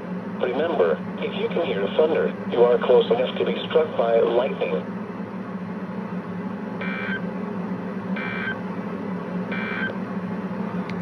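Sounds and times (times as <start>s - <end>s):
low hum: 0.0s - 11.0s
digital data tone bursts: 6.8s - 7.2s, 8.2s - 8.6s, 9.5s - 9.9s.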